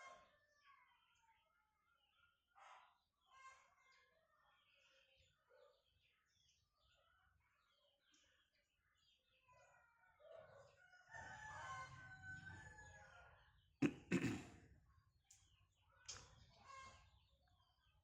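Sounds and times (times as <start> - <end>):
rooster crowing: 11.0 - 13.2.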